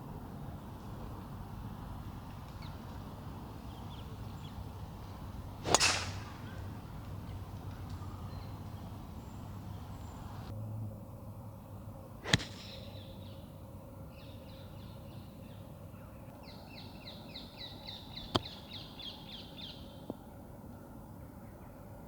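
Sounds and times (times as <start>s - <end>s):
low background noise: 0.0s - 22.0s
golf ball strike crack: 2.1s - 10.5s, 12.2s - 12.9s
golf club swish: 5.3s - 10.5s, 12.2s - 12.8s.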